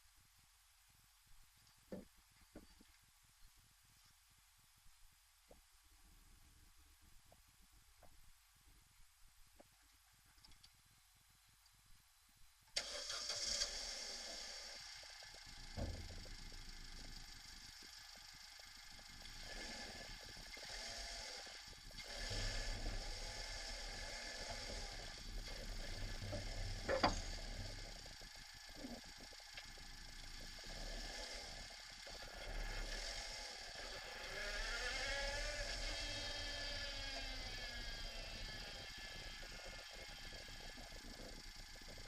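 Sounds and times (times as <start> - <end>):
car engine revving: 12.8 - 42.0.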